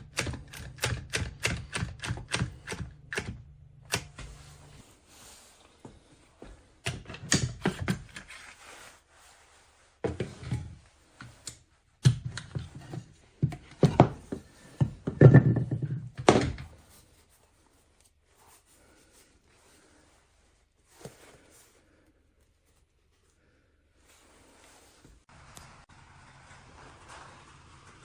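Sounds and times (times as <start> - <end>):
objects knocking on hard surface: 13.4 - 16.7.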